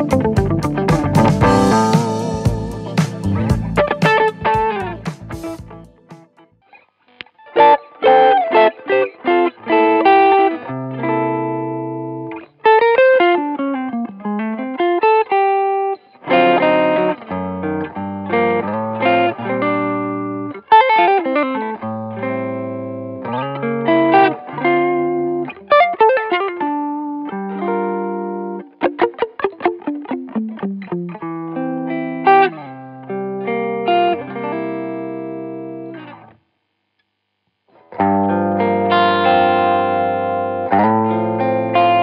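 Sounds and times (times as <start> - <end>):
bass line: 0.0 - 6.2
electric guitar jazz phrase: 0.0 - 6.5, 7.4 - 36.2, 37.9 - 42.0.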